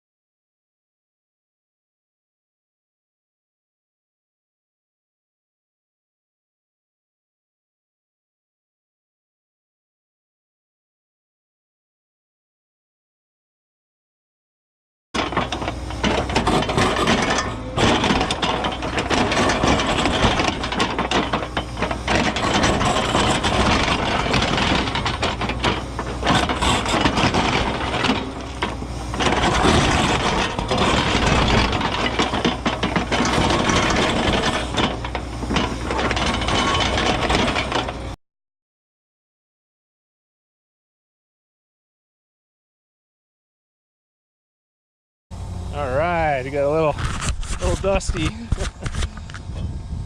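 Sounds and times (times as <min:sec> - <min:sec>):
excavator diesel engine under load: 0:15.2 - 0:38.2, 0:45.4 - 0:50.0
rock cracking and scraping: 0:15.7 - 0:38.1, 0:46.6 - 0:49.5.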